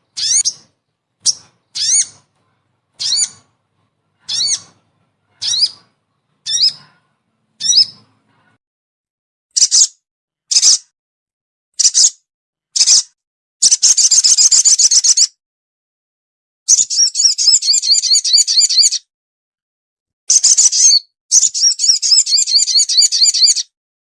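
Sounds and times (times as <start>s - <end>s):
bird lure calls: 0.2s - 2.2s, 3.0s - 3.4s, 4.3s - 4.7s, 5.4s - 5.8s, 6.4s - 6.8s.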